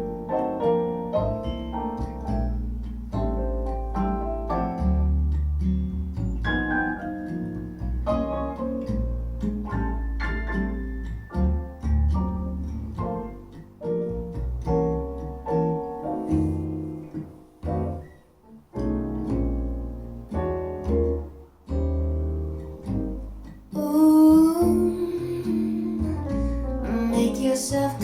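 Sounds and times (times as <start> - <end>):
jazz ballad on piano guitar and bass: 0.0 - 28.0
person singing: 23.7 - 28.0.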